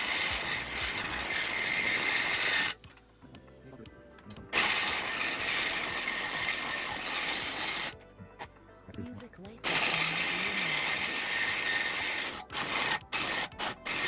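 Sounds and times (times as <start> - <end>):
power saw cutting with high whine: 0.0 - 2.8, 4.5 - 8.0, 9.6 - 14.0.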